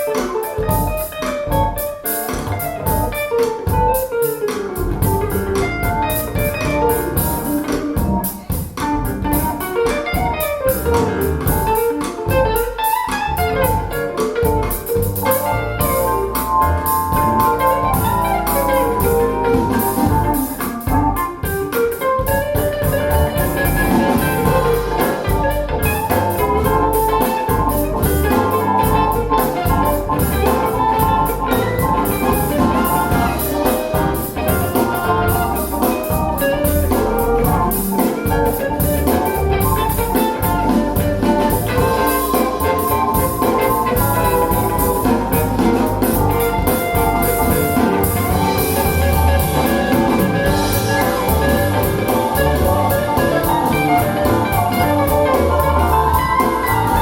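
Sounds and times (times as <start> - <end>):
drums: 0.0 - 57.0
instrumental jazz music: 0.0 - 57.0
bright melodic line: 22.8 - 57.0.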